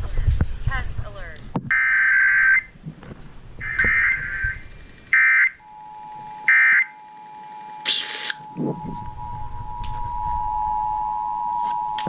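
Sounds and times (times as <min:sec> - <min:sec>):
warbling digital data tones: 0:03.6 - 0:12.0
two-tone attention signal: 0:05.6 - 0:12.0.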